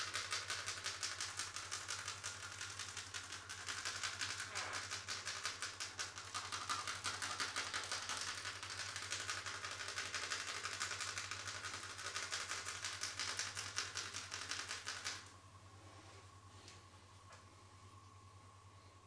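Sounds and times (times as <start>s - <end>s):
hands tapping rapidly on body: 0.0s - 15.2s.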